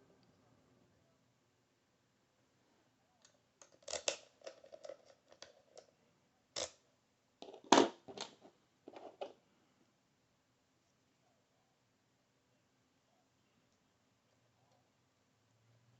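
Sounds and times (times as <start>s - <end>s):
lockpicking tools clicking and scraping: 3.6s - 5.9s.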